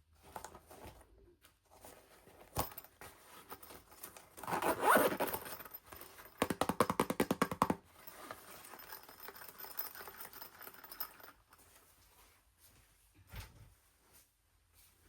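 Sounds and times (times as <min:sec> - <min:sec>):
faint packaging handling noise: 0:00.0 - 0:06.6.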